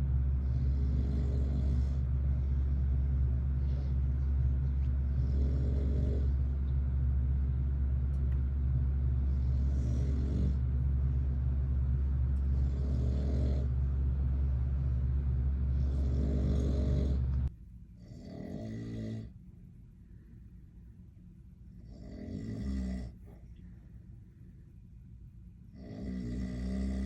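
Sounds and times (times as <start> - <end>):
man snoring: 0.0 - 4.1, 5.0 - 6.6, 9.2 - 10.7, 12.4 - 13.9, 15.7 - 19.3, 21.8 - 23.2, 25.8 - 27.0
loud steady low hum: 0.0 - 27.0.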